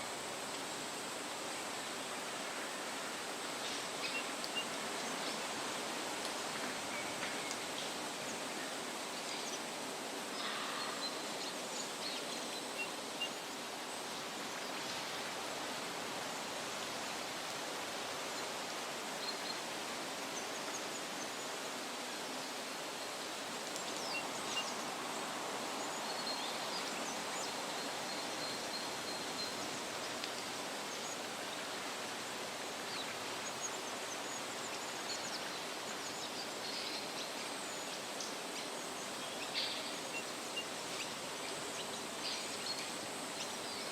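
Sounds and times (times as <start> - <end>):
steady rushing hiss: 0.0 - 43.9.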